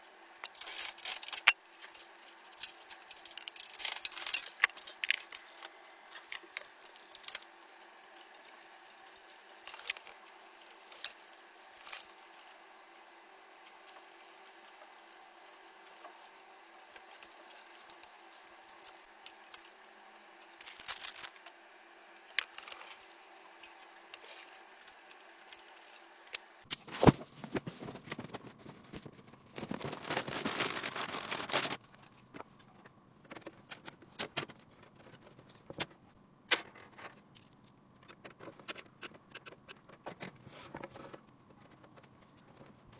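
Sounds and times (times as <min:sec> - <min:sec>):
rustling: 0:26.7 - 0:32.5.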